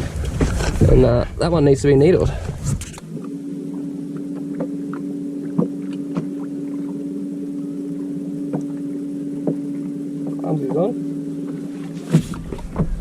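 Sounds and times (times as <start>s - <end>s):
boat motor humming: 0.0s - 13.0s.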